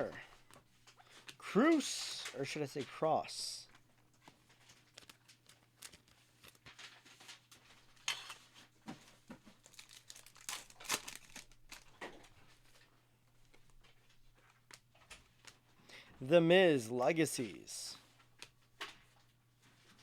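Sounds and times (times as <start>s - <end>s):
cards scraping and clicking: 3.7s - 7.4s
foil wrapper crinkling and tearing: 4.2s - 8.0s, 9.5s - 12.3s.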